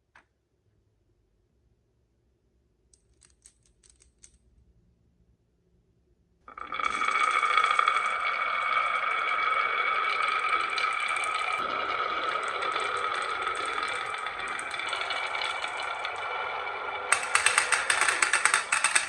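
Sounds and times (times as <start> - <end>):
marbles rolling down track: 6.5 - 19.0.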